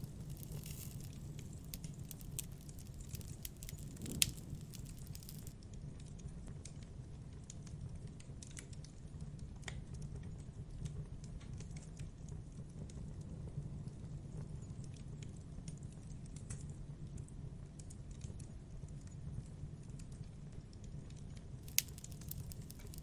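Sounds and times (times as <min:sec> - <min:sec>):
fire snaps and pops: 0:00.0 - 0:05.5, 0:21.6 - 0:23.0
wood fire crackling: 0:00.0 - 0:05.5, 0:21.6 - 0:23.0.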